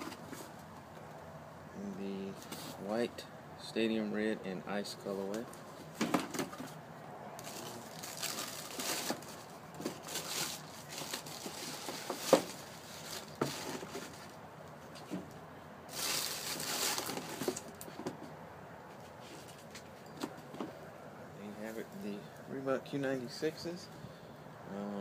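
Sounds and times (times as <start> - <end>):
paper crinkling and rustling: 7.4 - 14.3, 15.9 - 17.8.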